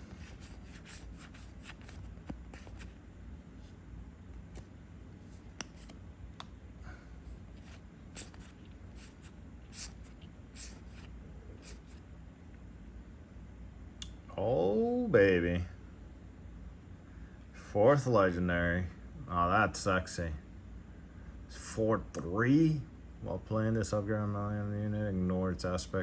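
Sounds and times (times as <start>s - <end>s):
cards being flipped through: 0.0s - 3.0s, 4.4s - 6.6s, 7.3s - 12.0s.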